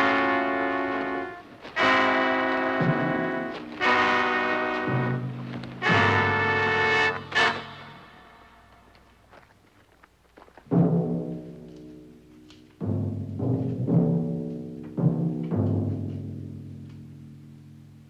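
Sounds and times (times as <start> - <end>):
timpani: 0.0 - 8.9, 10.7 - 17.2
dramatic orchestral chords: 0.0 - 9.0.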